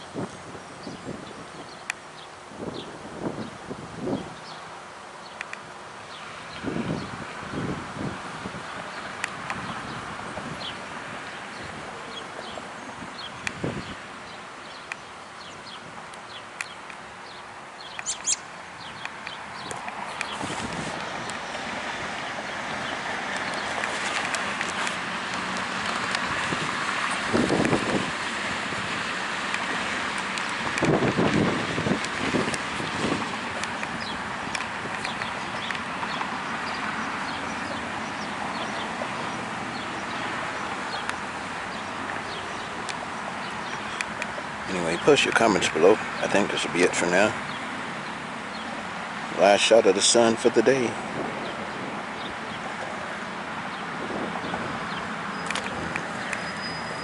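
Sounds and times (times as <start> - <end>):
birds chirping: 0.0 - 7.8, 8.5 - 28.3, 29.0 - 57.0
strong wind rushing: 6.6 - 12.0, 19.5 - 41.0, 51.0 - 52.7, 53.4 - 57.0
wind rushing: 19.6 - 29.1, 30.6 - 35.6.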